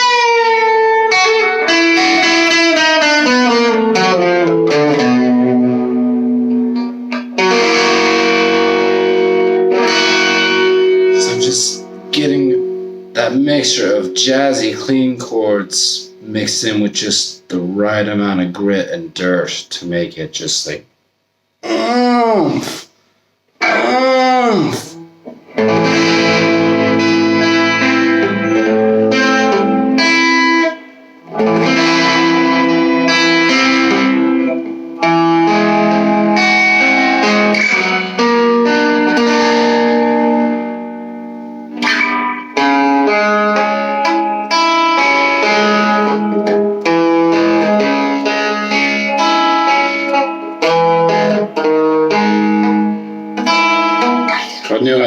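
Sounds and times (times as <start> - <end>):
electric guitar playing chords: 0.0 - 18.0, 23.6 - 55.0.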